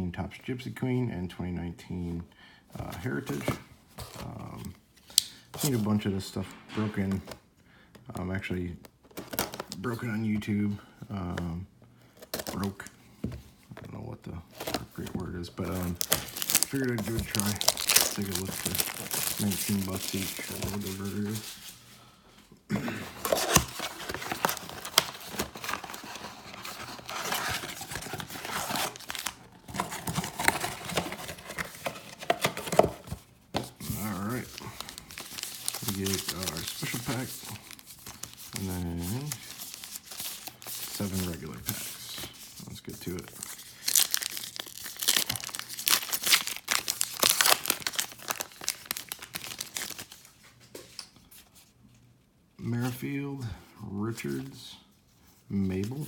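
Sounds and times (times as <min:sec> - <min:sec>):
cardboard and wrapping tearing: 0:14.6 - 0:21.7, 0:22.9 - 0:33.1, 0:33.9 - 0:42.1, 0:43.0 - 0:50.2.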